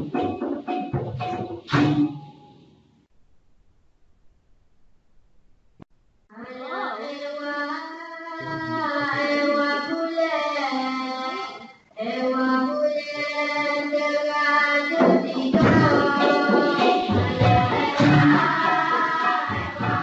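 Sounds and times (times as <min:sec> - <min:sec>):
hand percussion with maracas: 0:00.0 - 0:02.6, 0:14.9 - 0:20.0.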